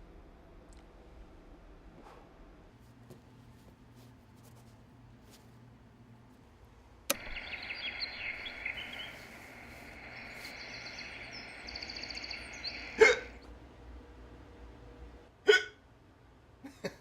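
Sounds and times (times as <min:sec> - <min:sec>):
birds chirping: 0:07.1 - 0:13.4
steady hiss: 0:07.1 - 0:13.4
person hiccuping: 0:13.0 - 0:13.3, 0:15.4 - 0:15.8.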